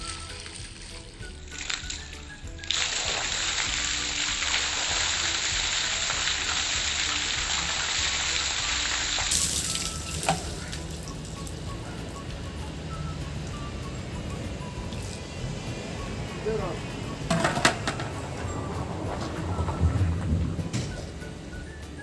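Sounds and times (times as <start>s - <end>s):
water pouring: 0.0s - 15.4s.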